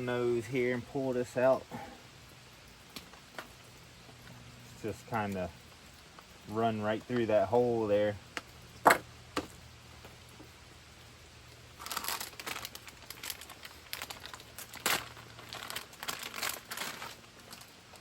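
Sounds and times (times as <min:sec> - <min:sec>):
crinkling handling noises: 0:02.8 - 0:07.6, 0:11.5 - 0:18.0.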